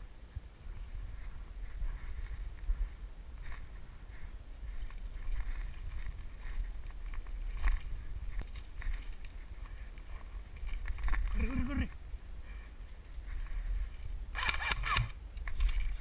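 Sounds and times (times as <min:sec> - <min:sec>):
faint rustling: 0:00.0 - 0:16.0
wind rumble on microphone: 0:00.0 - 0:16.0
camera handling noise: 0:14.4 - 0:16.0.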